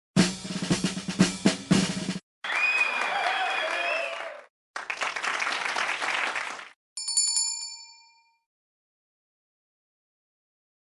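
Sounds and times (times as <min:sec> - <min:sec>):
small bell rung rapidly: 0:07.0 - 0:08.4.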